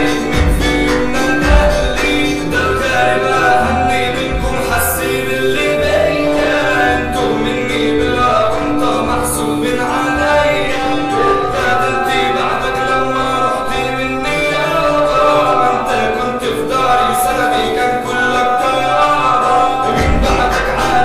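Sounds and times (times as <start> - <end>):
instrumental backing music: 0.0 - 21.0
man singing: 0.0 - 21.0
deep bass: 0.3 - 6.2, 20.0 - 20.9.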